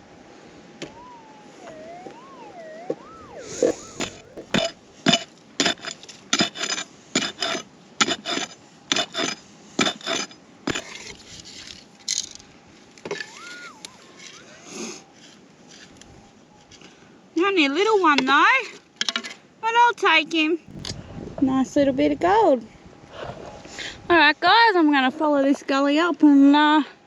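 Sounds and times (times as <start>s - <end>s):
metal detector warbling tone: 0.9s - 4.8s, 13.2s - 14.7s
digging tool scraping ground: 3.4s - 11.9s.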